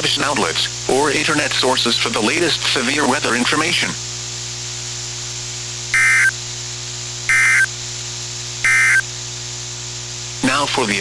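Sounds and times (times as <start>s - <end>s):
radio hum and hiss: 0.0s - 11.0s
digital data buzzes: 5.9s - 6.4s, 7.3s - 7.7s, 8.6s - 9.0s.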